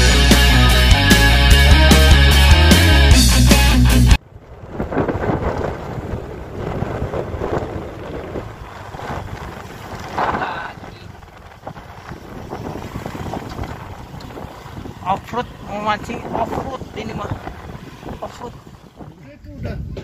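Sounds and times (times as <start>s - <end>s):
vehicle low rumble: 4.2s - 20.0s
wind buffeting microphone: 4.2s - 20.0s.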